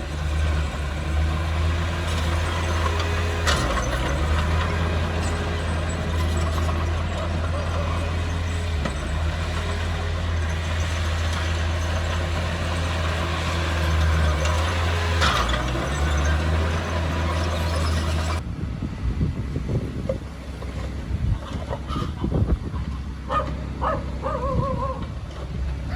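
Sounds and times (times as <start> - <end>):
heavy diesel engine running: 0.0 - 24.4
wind noise: 18.4 - 23.2.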